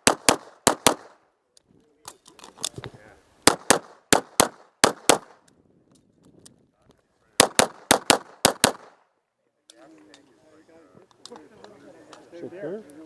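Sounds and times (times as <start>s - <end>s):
pistol shots: 0.0s - 1.2s, 3.4s - 5.4s, 7.4s - 9.0s.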